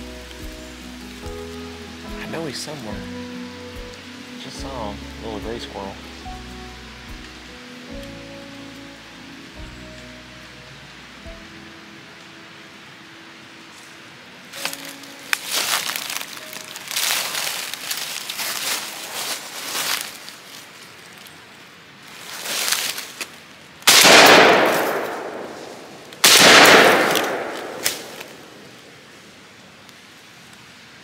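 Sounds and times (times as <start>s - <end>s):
soft rustling: 14.6s - 23.8s
gunshots echoing: 23.9s - 28.9s.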